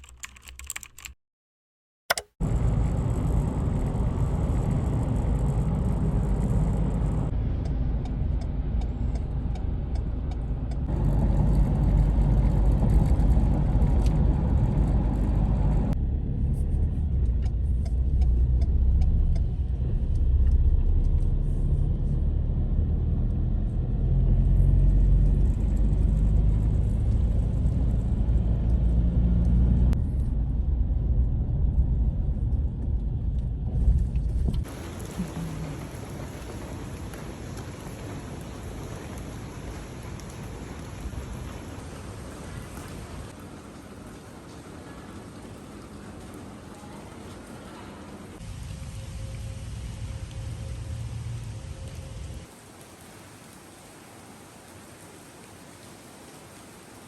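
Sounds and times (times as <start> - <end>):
steady low rumble: 2.4 - 43.4, 48.3 - 52.5.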